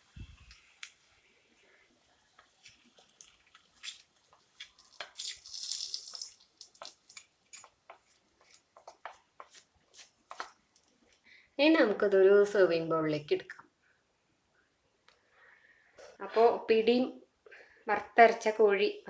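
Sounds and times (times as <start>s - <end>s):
seeds crackling in hot oil: 0.0s - 8.7s.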